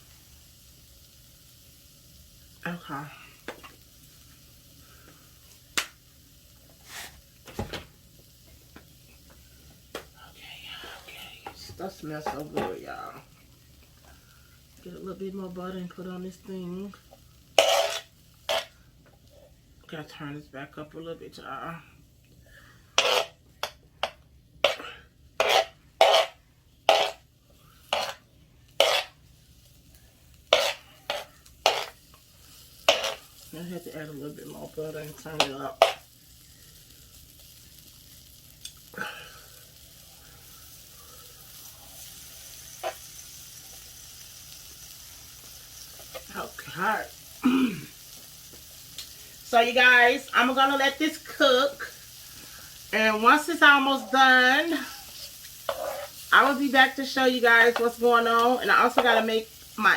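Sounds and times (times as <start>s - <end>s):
spatula scraping frying pan: 6.8s - 7.2s, 17.6s - 18.8s, 23.0s - 27.2s, 27.8s - 29.2s, 30.4s - 33.5s, 35.3s - 36.1s, 50.6s - 59.9s.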